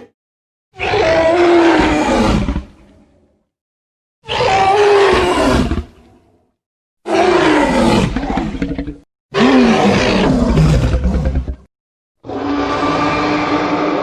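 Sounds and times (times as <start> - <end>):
dinosaur roars: 0.8 - 2.8, 4.2 - 6.0, 7.1 - 14.0.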